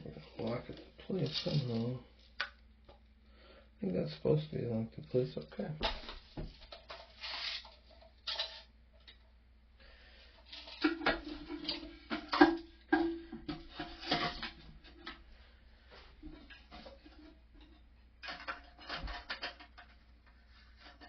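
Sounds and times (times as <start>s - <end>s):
plastic parts clicking and tapping: 16.4s - 20.4s.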